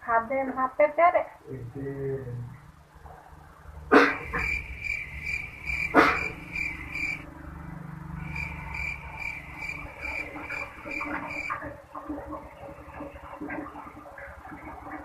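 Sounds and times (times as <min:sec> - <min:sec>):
cricket chirping: 0:02.5 - 0:11.7.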